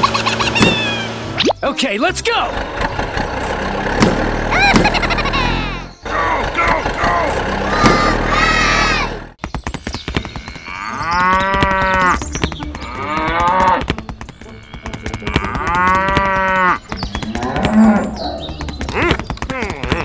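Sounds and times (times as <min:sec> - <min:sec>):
cow mooing: 0:14.5 - 0:19.0.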